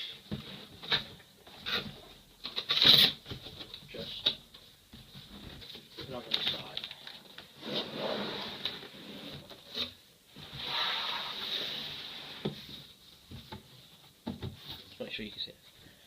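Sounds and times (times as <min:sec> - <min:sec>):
cardboard box rubbing and sliding: 0:07.6 - 0:09.5, 0:10.4 - 0:12.8.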